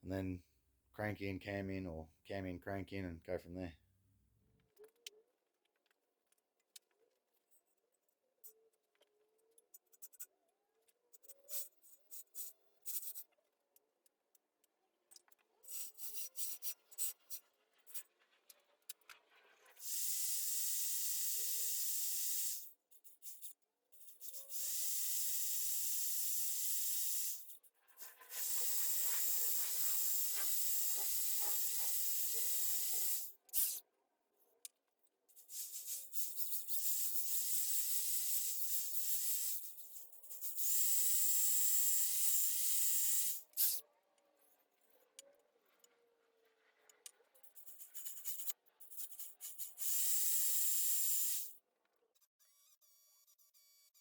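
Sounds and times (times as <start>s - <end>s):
compressed air blow gun hissing: 28.3s - 33.3s.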